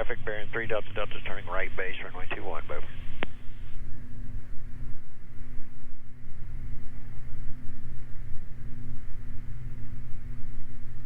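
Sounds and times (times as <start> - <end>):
aircraft engines droning: 0.0 - 11.0.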